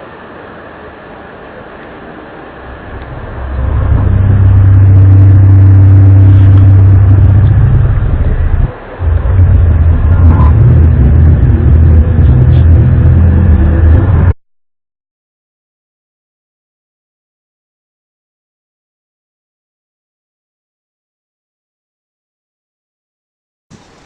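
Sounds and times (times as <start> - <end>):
loud low droning hum: 0.0 - 14.4.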